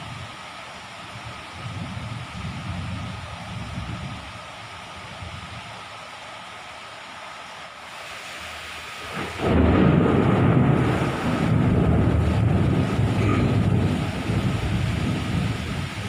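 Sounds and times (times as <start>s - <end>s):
low hiss: 0.0s - 9.8s
thunder crack and rolling rumble: 9.0s - 16.0s.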